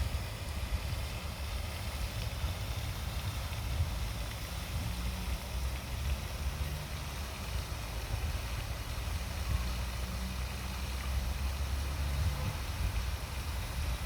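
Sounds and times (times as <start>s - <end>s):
wind on microphone: 0.0s - 10.8s, 11.4s - 14.0s
motorboat engine rumbling: 0.0s - 13.8s.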